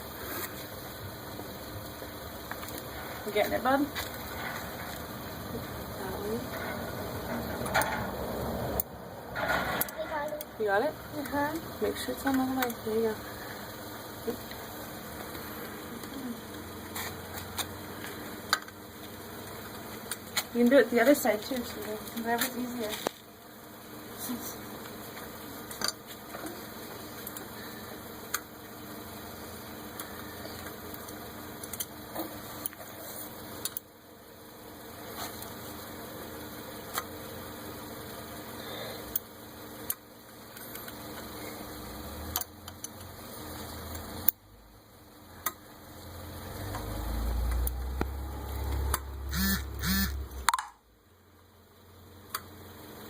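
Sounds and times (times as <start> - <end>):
short pitched sounds: 49.3 - 50.8.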